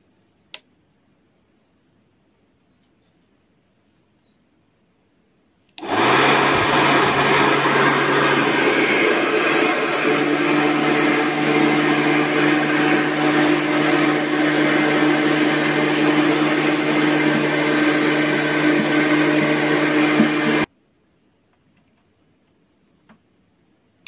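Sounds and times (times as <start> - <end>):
vacuum motor humming: 5.8 - 20.7.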